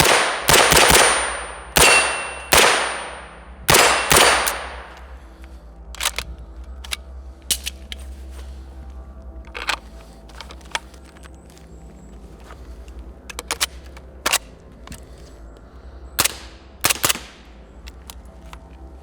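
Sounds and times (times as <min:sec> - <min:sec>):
suppressed rifle shots: 0:00.0 - 0:05.1, 0:16.2 - 0:17.5.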